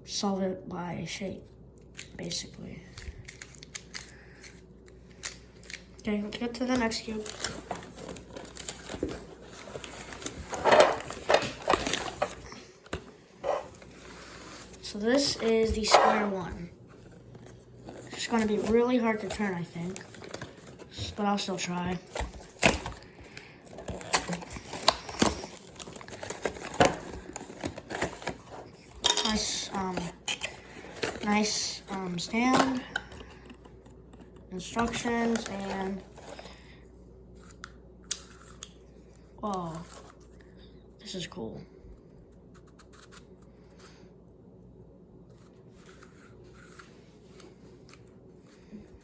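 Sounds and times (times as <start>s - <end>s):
low room hum: 0.0s - 49.0s
plastic packaging crinkling: 3.0s - 36.6s.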